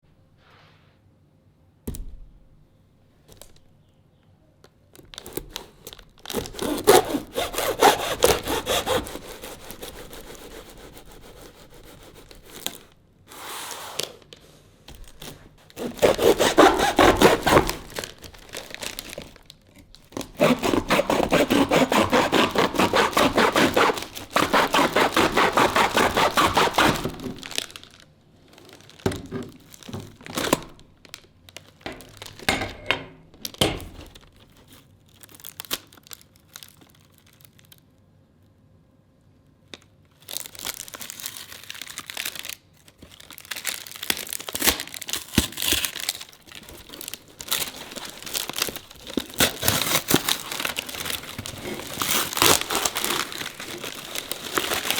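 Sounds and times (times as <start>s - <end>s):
saw cutting: 6.6s - 12.8s, 15.8s - 18.0s, 20.3s - 27.7s.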